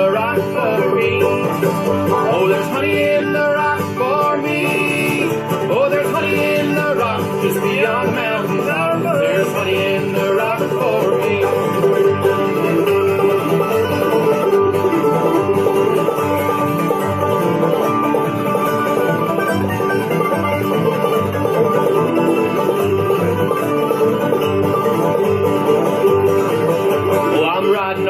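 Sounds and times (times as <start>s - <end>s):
banjo: 0.0s - 28.0s
guitar: 0.0s - 28.0s
pulsing bass line: 8.0s - 27.4s.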